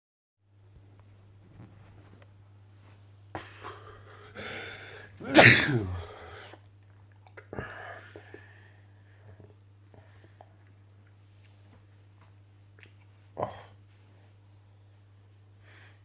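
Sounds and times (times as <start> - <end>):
person sneezing: 5.2 - 6.4.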